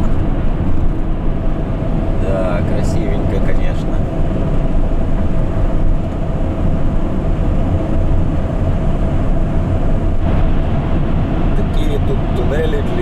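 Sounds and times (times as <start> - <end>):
van engine and tyres rumbling: 0.0 - 13.0.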